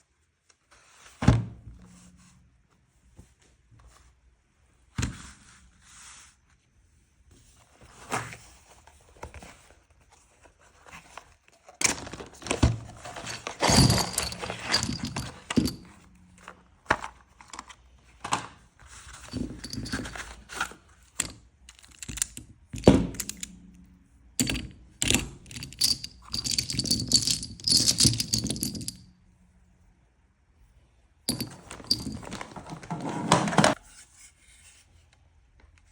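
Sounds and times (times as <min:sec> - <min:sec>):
metallic clinking and rattling: 0:13.4 - 0:16.0, 0:19.3 - 0:23.5, 0:24.4 - 0:29.1, 0:31.3 - 0:33.0.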